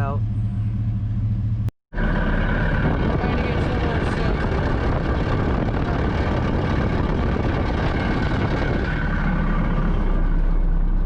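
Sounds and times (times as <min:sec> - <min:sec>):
heavy truck engine and road rumble: 0:00.0 - 0:11.0.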